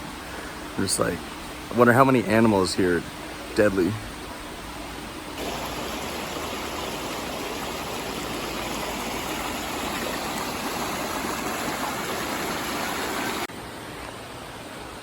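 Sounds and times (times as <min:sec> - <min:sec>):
river rushing over rocks: 0:05.4 - 0:13.5.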